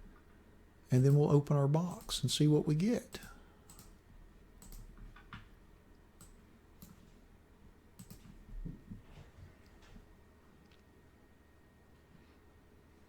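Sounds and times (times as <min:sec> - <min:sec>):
mouse and keyboard clicks: 0:08.0 - 0:08.3.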